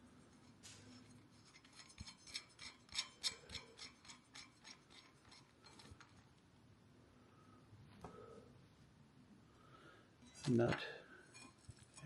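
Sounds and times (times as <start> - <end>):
wrench clicking and scraping on metal: 0.9 - 6.1.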